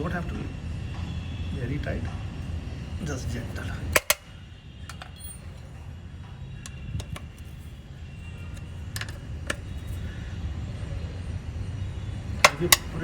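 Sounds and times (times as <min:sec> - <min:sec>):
metallic clicks of hand tools: 0:03.9 - 0:04.2, 0:12.4 - 0:13.0.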